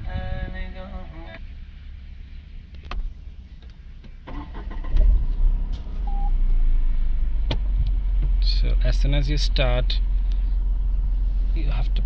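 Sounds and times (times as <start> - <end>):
car engine cranking and idling: 0.0 - 12.0
short beep: 6.0 - 6.4.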